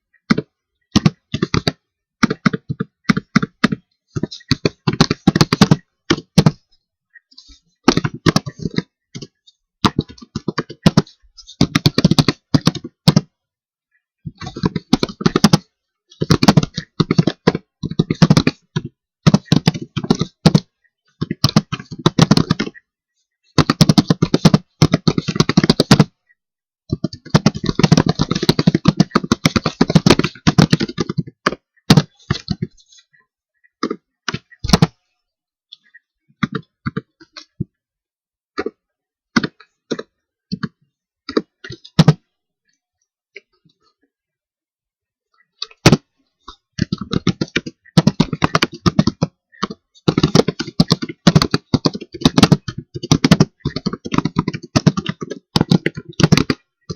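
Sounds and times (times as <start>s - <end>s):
keyboard typing: 0.2s - 13.4s, 14.2s - 22.9s, 23.5s - 33.1s, 35.7s - 37.7s, 45.6s - 56.9s.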